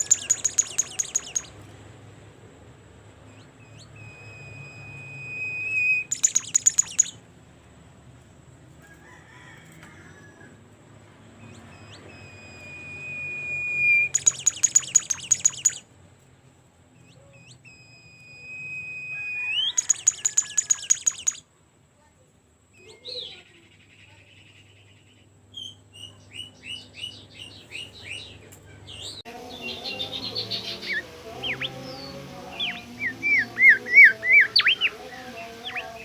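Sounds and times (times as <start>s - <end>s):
songbird singing: 0.0s - 1.8s, 3.2s - 7.2s, 11.4s - 15.9s, 17.0s - 21.4s, 22.8s - 36.0s.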